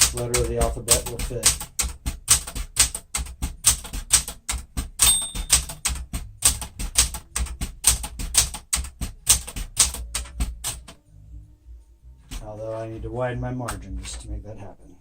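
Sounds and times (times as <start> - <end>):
typewriter keys striking: 0.0 - 11.0
typewriter bell ring: 5.0 - 6.0.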